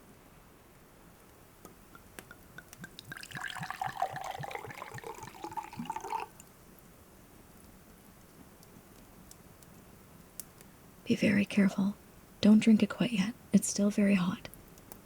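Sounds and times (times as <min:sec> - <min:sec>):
tea pouring into a cup: 0:02.0 - 0:06.6.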